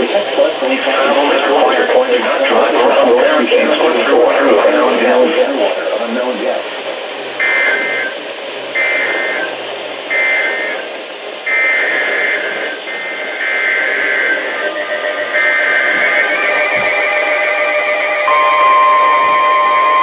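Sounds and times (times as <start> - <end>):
steady alert tones: 14.5 - 20.0.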